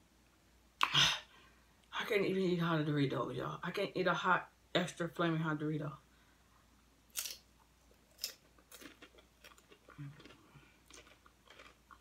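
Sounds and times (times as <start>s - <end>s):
tortilla chips crunching: 7.1s - 12.0s.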